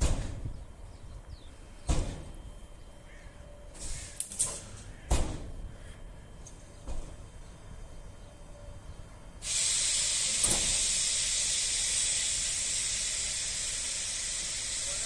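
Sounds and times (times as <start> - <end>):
air brakes hissing: 9.4 - 15.0.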